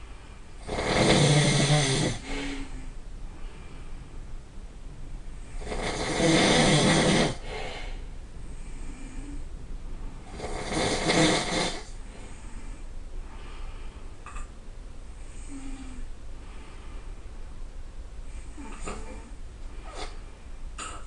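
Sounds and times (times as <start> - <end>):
faint breathing: 0.0 - 0.6, 1.6 - 4.4, 6.9 - 10.4, 11.5 - 14.5, 15.1 - 17.5, 18.2 - 20.6
person snoring loudly: 0.6 - 2.8, 5.6 - 7.7, 10.3 - 12.0.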